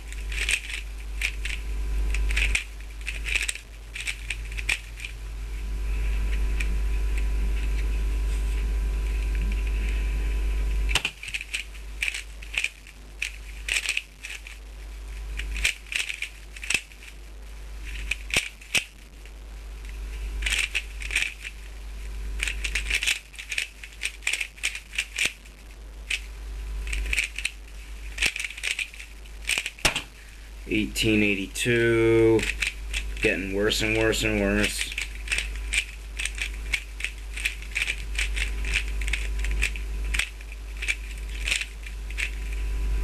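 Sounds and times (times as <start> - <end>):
puzzle cube clicking and rattling: 0.0 - 5.2, 10.9 - 14.6, 15.2 - 17.2, 17.8 - 19.0, 19.8 - 21.8, 22.4 - 42.6
steady hum: 0.0 - 43.0.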